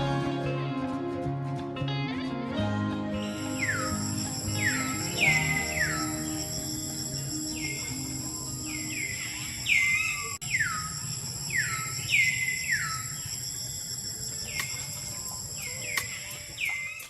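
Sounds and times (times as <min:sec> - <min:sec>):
bird whistling downward notes: 0:03.2 - 0:13.3
high-pitched insect drone: 0:03.2 - 0:17.0.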